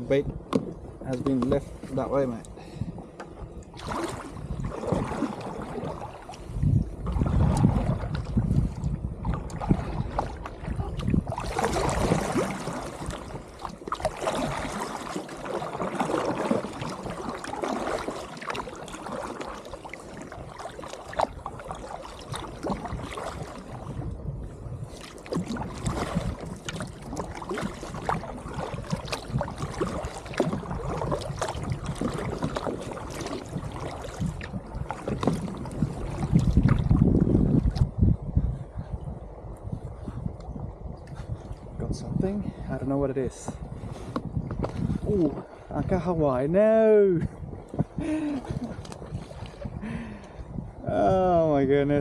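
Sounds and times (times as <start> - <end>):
water lapping against kayak: 0.0 - 52.0
wind rumble on microphone: 0.0 - 52.0
small splashes and ticks: 7.2 - 23.9, 24.9 - 37.0.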